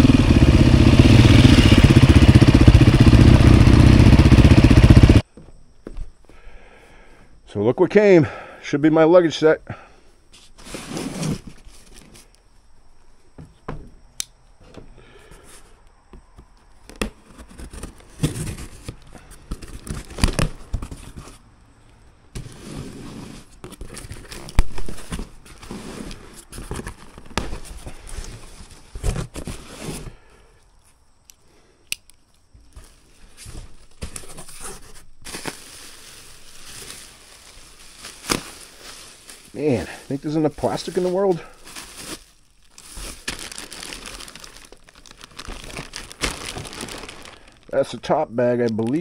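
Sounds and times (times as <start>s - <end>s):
cardboard and plastic rustling: 10.4s - 12.3s, 16.4s - 21.4s, 22.4s - 30.2s, 32.6s - 47.9s.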